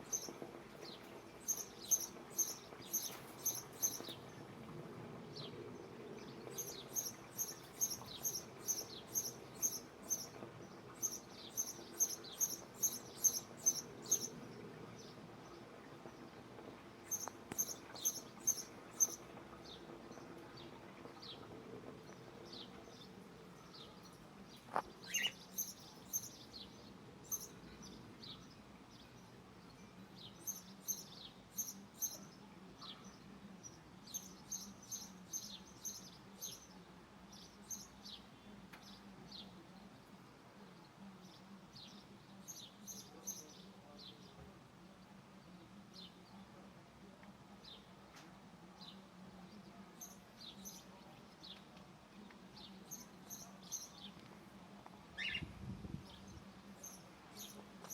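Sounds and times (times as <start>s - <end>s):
cockatiels chirping: 24.7s - 25.4s.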